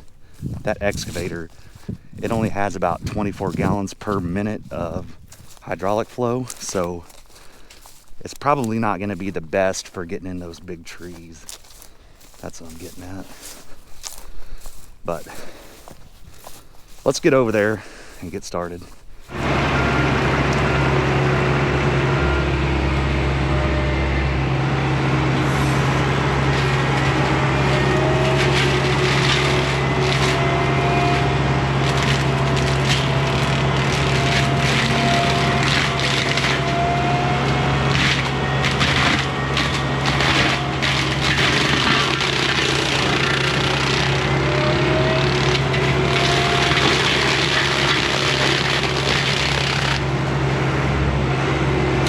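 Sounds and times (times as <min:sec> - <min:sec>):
excavator engine running: 0:00.0 - 0:52.0
hydraulic whine: 0:19.0 - 0:52.0
wood cracking and snapping: 0:26.5 - 0:50.0.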